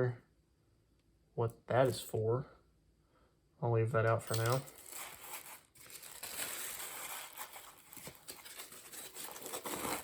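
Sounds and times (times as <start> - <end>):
packaging rustling: 4.3 - 10.0.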